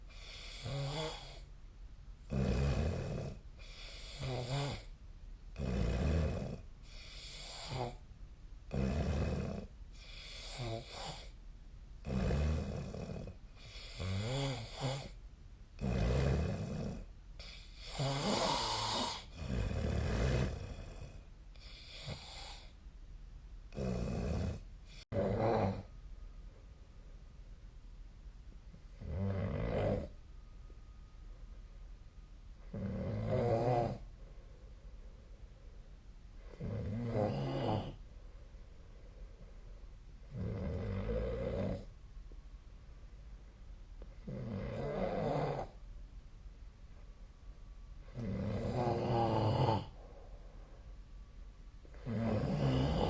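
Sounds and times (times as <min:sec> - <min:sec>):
person snoring loudly: 0:00.1 - 0:01.4, 0:02.3 - 0:04.9, 0:05.6 - 0:08.0, 0:08.7 - 0:11.3, 0:12.0 - 0:15.2, 0:15.8 - 0:22.7, 0:23.7 - 0:25.9, 0:29.0 - 0:30.1, 0:32.7 - 0:34.0, 0:36.5 - 0:38.0, 0:40.3 - 0:41.9, 0:44.2 - 0:45.8, 0:48.1 - 0:50.0, 0:52.0 - 0:53.0.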